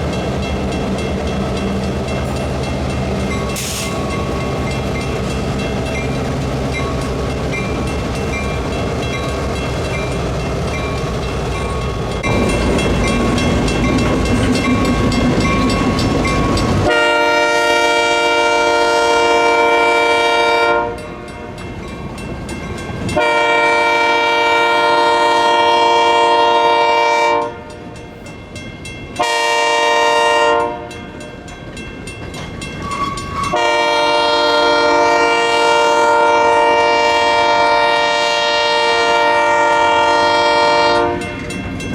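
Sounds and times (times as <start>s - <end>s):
rail clatter: 0.0s - 18.6s, 30.6s - 34.2s
diesel locomotive rumbling: 0.0s - 41.9s
train horn: 16.7s - 21.5s, 23.1s - 28.0s, 29.2s - 31.2s, 33.0s - 41.4s.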